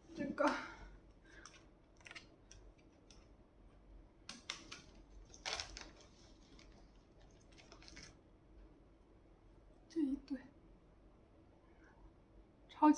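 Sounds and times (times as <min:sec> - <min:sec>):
packaging rustle: 0:01.3 - 0:03.3, 0:04.3 - 0:08.2.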